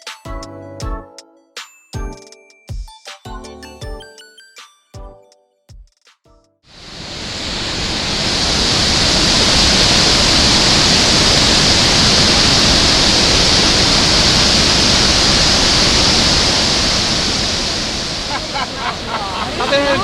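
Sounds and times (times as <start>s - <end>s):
waterfall rushing: 6.8s - 20.0s.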